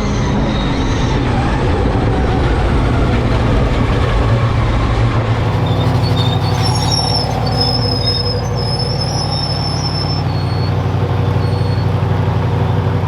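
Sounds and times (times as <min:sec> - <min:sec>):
thin high-pitched whines: 0:05.3 - 0:12.0
truck engine running: 0:05.3 - 0:13.0.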